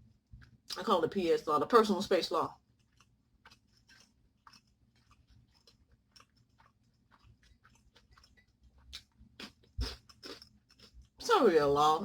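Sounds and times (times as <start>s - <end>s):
chewing mouth clicks: 2.6s - 11.2s.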